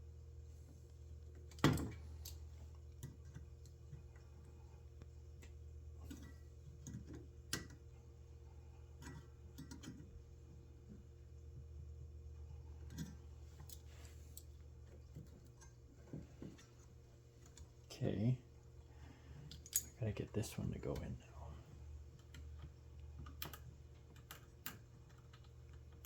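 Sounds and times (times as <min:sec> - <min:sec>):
steady low hum: 0:00.0 - 0:26.0
tools and metal parts clicking: 0:19.5 - 0:20.0.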